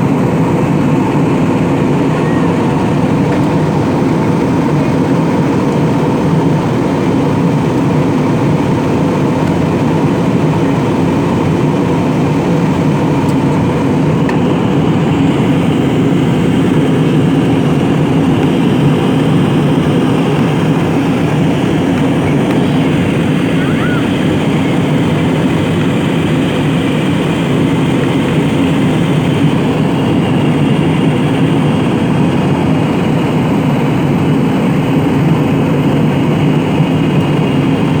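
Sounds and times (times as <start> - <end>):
airliner cabin engine and airflow noise: 0.0 - 38.0.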